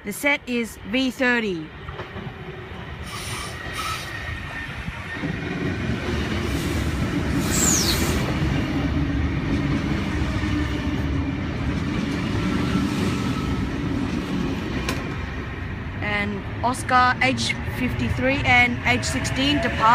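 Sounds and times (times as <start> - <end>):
electric train rumble and hum: 0.0 - 19.9
high falling squeal: 7.4 - 8.2.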